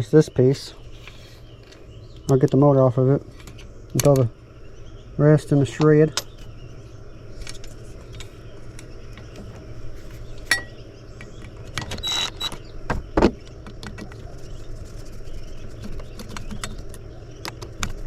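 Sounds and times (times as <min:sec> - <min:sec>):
metal tools clinking: 0:10.5 - 0:10.8.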